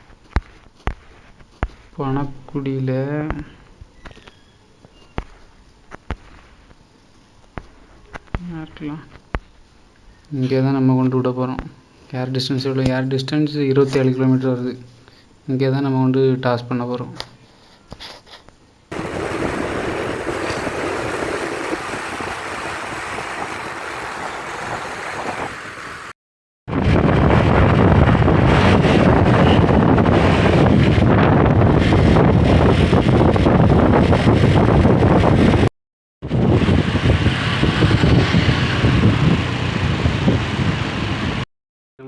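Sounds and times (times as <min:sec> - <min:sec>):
wind on microphone: 0:18.9 - 0:26.1, 0:26.7 - 0:41.4
road vehicle rumble: 0:18.9 - 0:26.2, 0:36.3 - 0:41.4
vehicle moving on road: 0:36.3 - 0:41.4.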